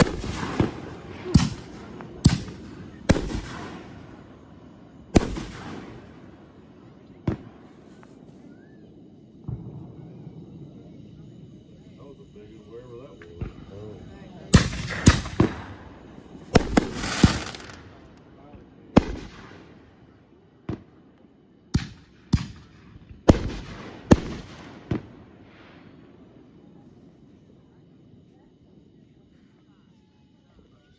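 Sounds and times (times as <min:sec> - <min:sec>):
fireworks bangs with rolling echo: 0:00.0 - 0:08.3, 0:09.4 - 0:10.2, 0:14.5 - 0:21.0, 0:21.7 - 0:26.0.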